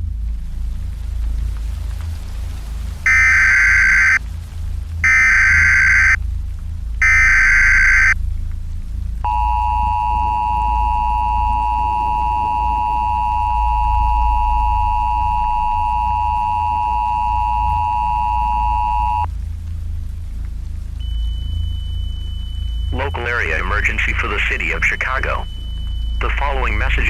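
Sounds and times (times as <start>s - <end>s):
low steady rumble: 0.0s - 27.0s
two-tone attention signal: 3.1s - 4.2s, 5.0s - 6.2s, 7.0s - 8.2s, 22.8s - 27.0s
warbling digital header bursts: 3.1s - 4.2s, 5.0s - 6.2s, 7.0s - 8.2s.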